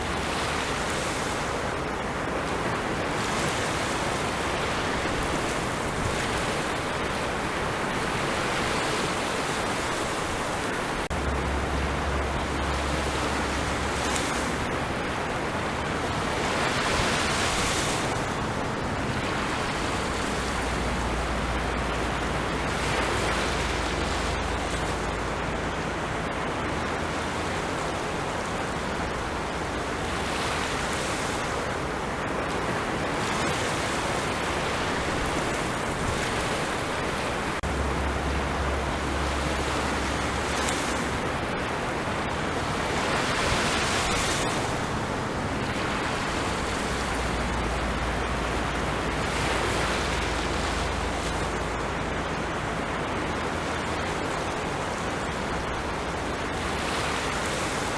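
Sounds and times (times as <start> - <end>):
ocean waves on shore: 0.0 - 57.9.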